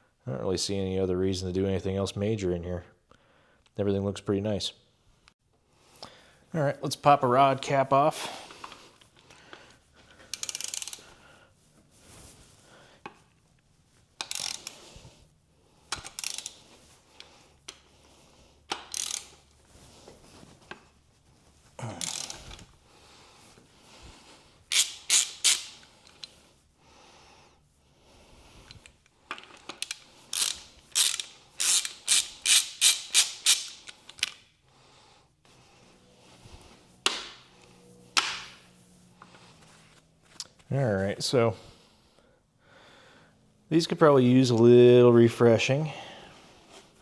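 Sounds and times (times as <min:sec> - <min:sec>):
socket ratchet strokes: 0:10.3 - 0:11.0, 0:14.2 - 0:15.0, 0:15.9 - 0:17.8, 0:18.7 - 0:19.6, 0:22.0 - 0:22.6, 0:24.7 - 0:26.3, 0:28.7 - 0:34.4.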